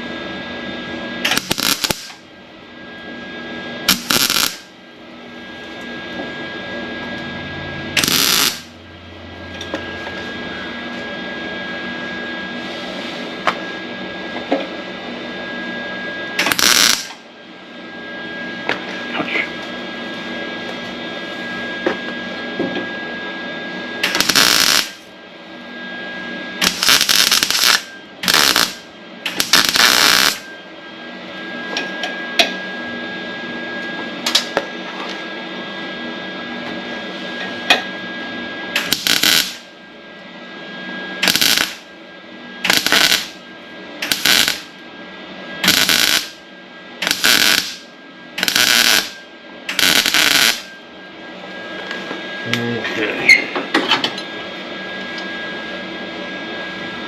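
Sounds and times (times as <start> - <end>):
steady hum with high whistle: 0.0 - 57.0
mig welder crackling: 1.2 - 2.2, 3.9 - 4.8, 8.0 - 8.8, 16.4 - 17.2, 24.0 - 25.1, 26.6 - 30.5, 34.3 - 34.6, 38.8 - 39.7, 41.2 - 41.9, 42.6 - 43.4, 44.0 - 44.8, 45.6 - 46.4, 47.0 - 50.7.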